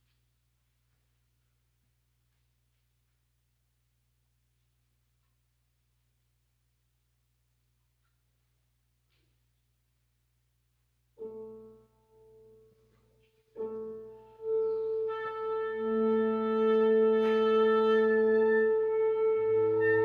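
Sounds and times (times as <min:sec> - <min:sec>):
wind quintet held chords: 0:14.3 - 0:20.0.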